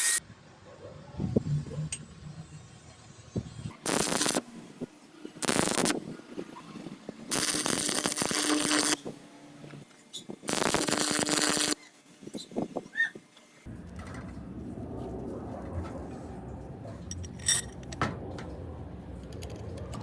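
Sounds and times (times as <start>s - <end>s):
welding arc crackling: 0.0s - 0.2s, 3.8s - 9.2s, 10.2s - 13.7s.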